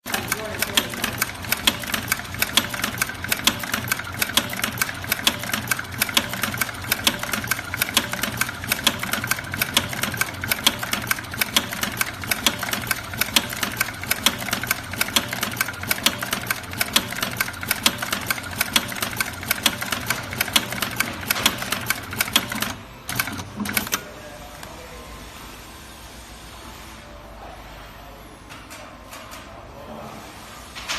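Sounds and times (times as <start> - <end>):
sewing machine clattering: 0.1 - 24.0.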